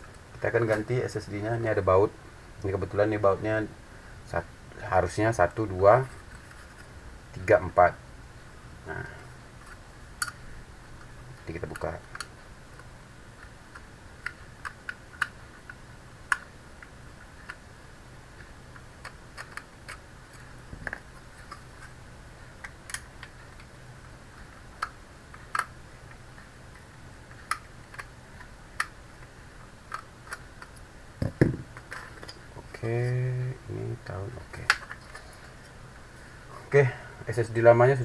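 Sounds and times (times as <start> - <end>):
faint low hum: 0.0 - 38.0.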